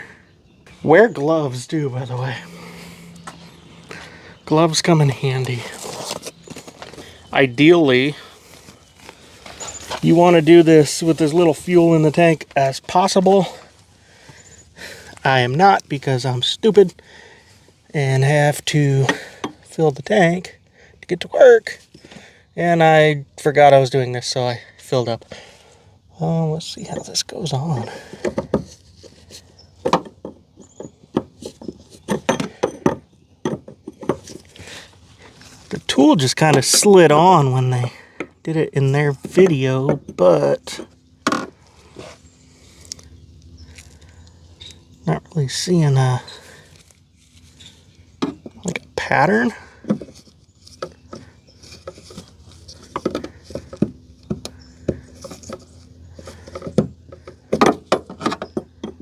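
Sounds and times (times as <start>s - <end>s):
tool clicking and scraping: 5.3s - 7.2s, 49.8s - 59.0s.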